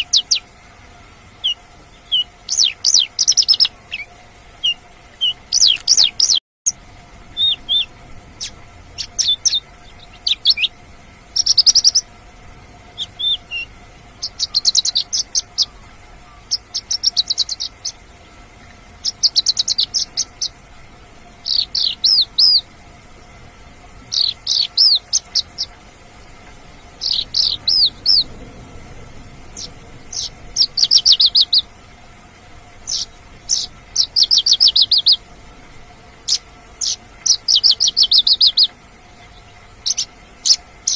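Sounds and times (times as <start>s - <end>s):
lark singing trilled phrases: 0.0s - 0.4s, 1.4s - 12.1s, 12.9s - 18.2s, 19.0s - 20.6s, 21.4s - 22.7s, 24.1s - 25.8s, 26.8s - 28.3s, 29.5s - 31.7s, 32.8s - 35.2s, 36.2s - 38.7s.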